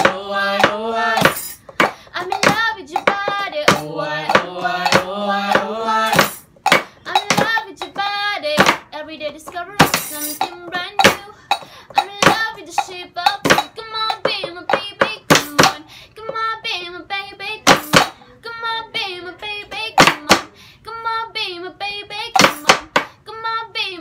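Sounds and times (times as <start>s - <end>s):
person singing a tune: 0.0s - 6.4s, 7.0s - 24.0s
percussive strikes on objects: 0.0s - 16.4s, 17.6s - 18.2s, 19.7s - 20.6s, 22.3s - 23.2s.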